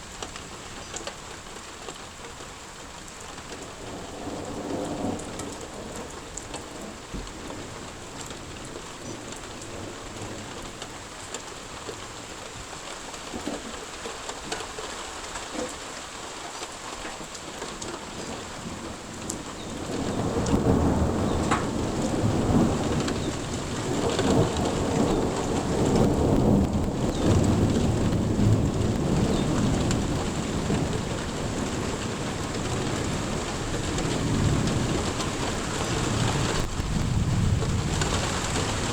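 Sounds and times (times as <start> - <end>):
rain falling: 0.0 - 38.9
thunder rumbling: 3.6 - 11.7, 17.5 - 38.9.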